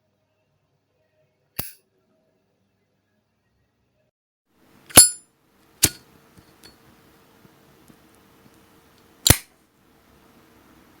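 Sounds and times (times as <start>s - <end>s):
lighter lid clicking open: 5.8s - 6.7s, 9.2s - 9.5s.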